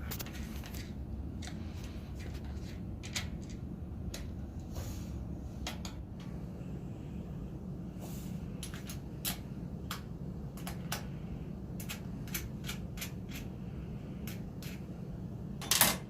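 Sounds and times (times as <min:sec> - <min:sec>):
steady low hum: 0:00.0 - 0:16.0
clicks and taps of parts and tools: 0:05.6 - 0:06.3, 0:08.6 - 0:11.1, 0:11.8 - 0:13.5.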